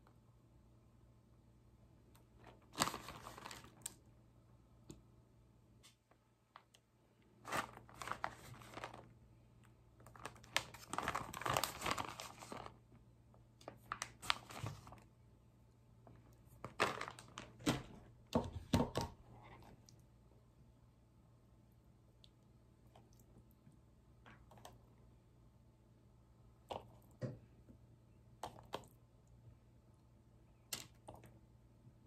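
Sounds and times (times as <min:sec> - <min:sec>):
packaging crinkling and tearing: 0:02.4 - 0:04.0, 0:07.4 - 0:09.1, 0:10.0 - 0:12.8, 0:13.6 - 0:15.1, 0:16.6 - 0:17.9.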